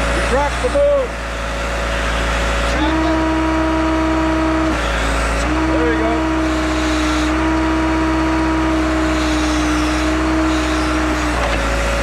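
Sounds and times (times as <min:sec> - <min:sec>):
backhoe engine running: 0:00.0 - 0:12.0.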